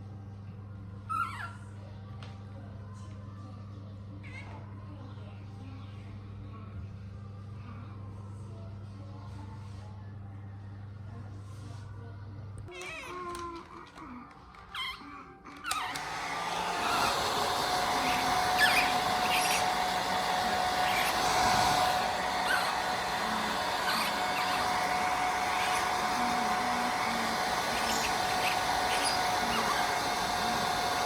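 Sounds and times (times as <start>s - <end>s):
hair dryer blowing: 15.7s - 31.0s.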